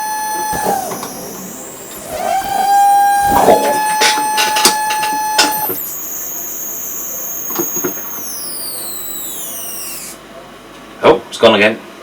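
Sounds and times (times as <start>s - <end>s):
harsh electronic noise: 0.0s - 10.2s
piercing high whistle: 0.0s - 10.2s.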